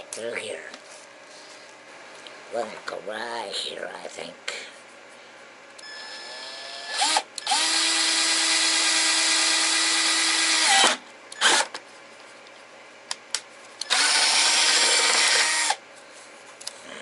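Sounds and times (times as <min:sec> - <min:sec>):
power drill boring a hole: 0:05.8 - 0:11.6, 0:13.8 - 0:15.8.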